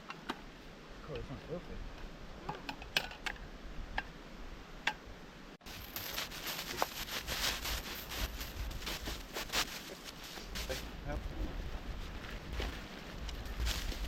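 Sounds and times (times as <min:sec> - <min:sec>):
rustling with small crackles: 0:05.6 - 0:14.0.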